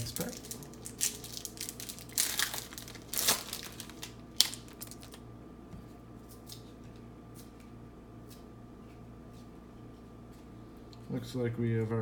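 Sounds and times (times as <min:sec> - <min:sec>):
wrapper rustling: 0:00.0 - 0:05.2.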